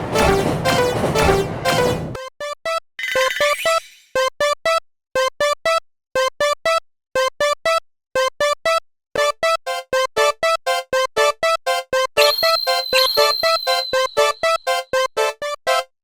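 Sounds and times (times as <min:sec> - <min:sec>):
electronic crossing bell tones: 0:12.2 - 0:14.8
second set of bell tones: 0:12.2 - 0:14.8.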